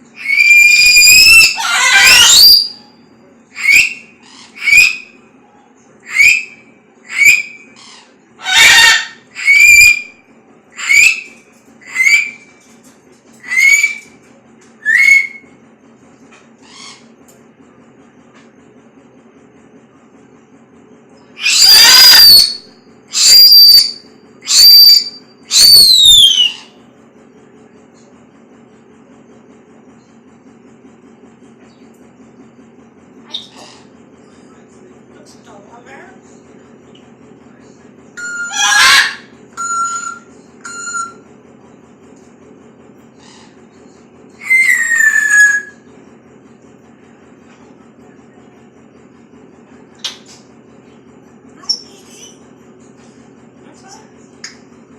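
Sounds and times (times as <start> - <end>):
parrot whistled screeches: 0.2 - 2.9, 3.6 - 5.2, 6.0 - 12.5, 13.4 - 14.1, 14.8 - 15.4, 21.4 - 26.7, 33.3 - 33.9, 38.2 - 41.2, 44.4 - 45.9.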